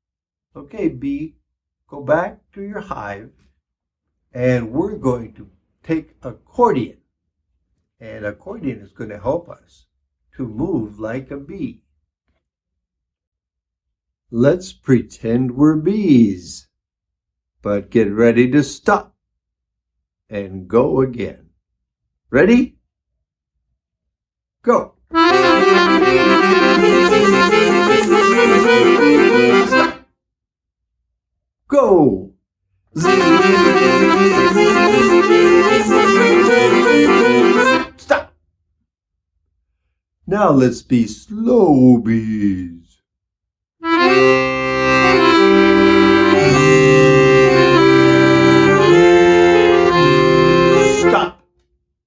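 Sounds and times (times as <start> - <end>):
accordion playing bouncy tune: 25.1 - 30.0, 33.0 - 38.0, 43.8 - 51.4.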